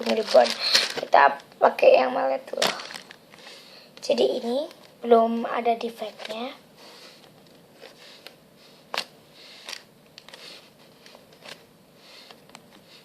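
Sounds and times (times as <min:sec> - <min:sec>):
foam toy rustling: 0:00.0 - 0:01.4.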